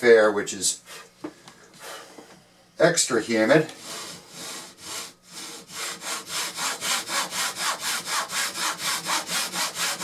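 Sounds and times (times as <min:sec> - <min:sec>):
hand saw cutting wood: 0:03.6 - 0:10.0.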